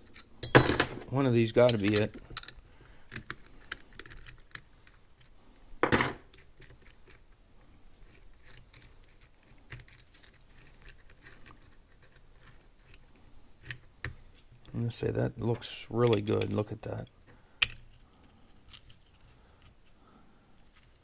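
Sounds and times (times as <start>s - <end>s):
small metal parts clinking: 0.0s - 1.0s, 1.6s - 5.0s.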